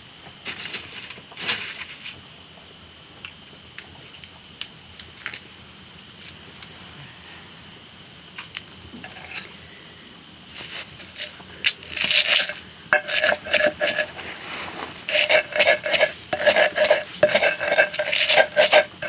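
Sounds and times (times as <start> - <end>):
metal utensils scraping a pot: 9.0 - 9.5, 11.0 - 19.0.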